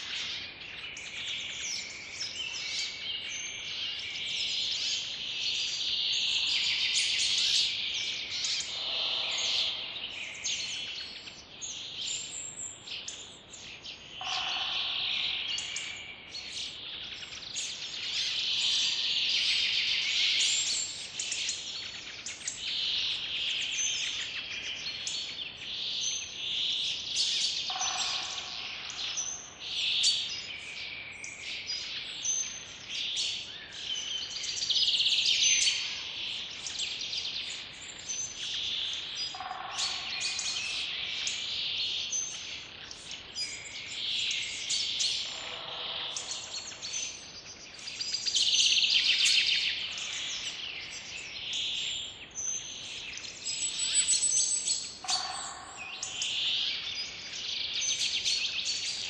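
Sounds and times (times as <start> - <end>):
small birds chirping and singing: 0.0 - 59.0.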